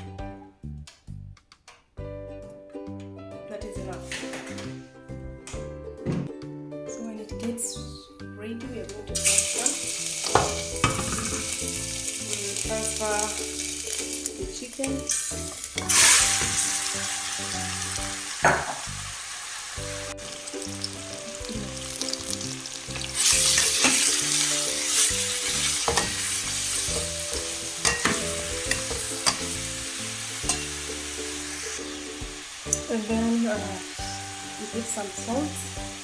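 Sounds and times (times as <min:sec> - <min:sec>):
chicken sizzling in hot oil: 0:09.1 - 0:36.0.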